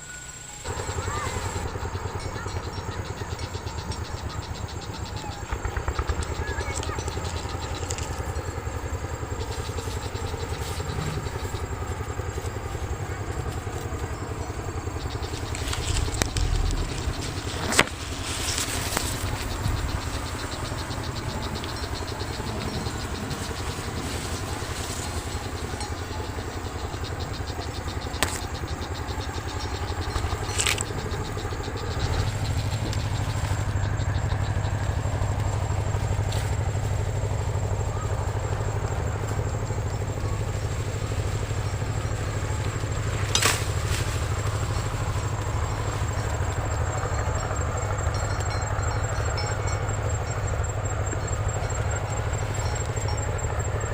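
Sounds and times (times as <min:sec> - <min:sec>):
small engine running: 0:00.0 - 0:53.9.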